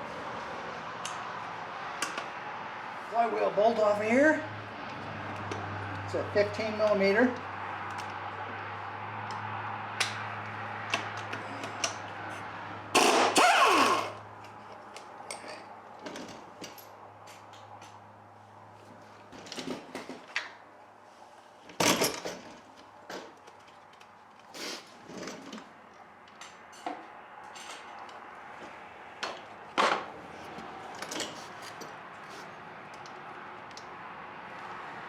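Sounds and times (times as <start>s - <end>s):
tools and metal parts clinking: 26.3s - 28.2s.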